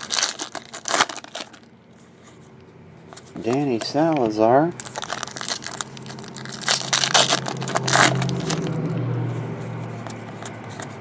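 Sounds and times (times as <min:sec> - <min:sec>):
foil wrapper crinkling: 0:00.0 - 0:01.7, 0:03.4 - 0:08.8
cards being handled: 0:00.0 - 0:11.0
steady low hum: 0:00.0 - 0:11.0.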